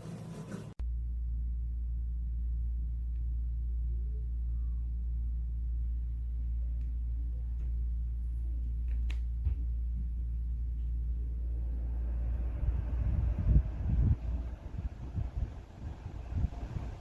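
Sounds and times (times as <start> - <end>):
fan air rumble: 0.0 - 17.0
gusts buffeting microphone: 11.4 - 17.0.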